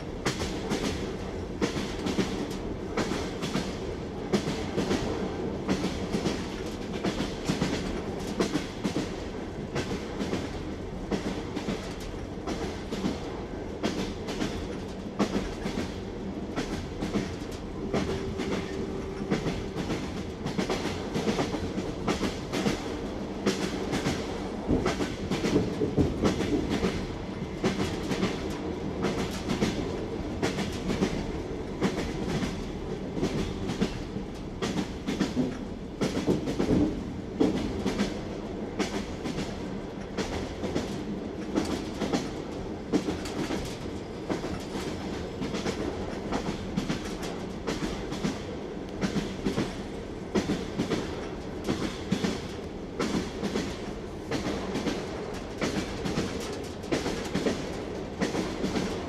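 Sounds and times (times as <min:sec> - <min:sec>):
rumble of moving train: 0:00.0 - 0:59.0
train wheels clattering over rail joints: 0:00.2 - 0:59.0.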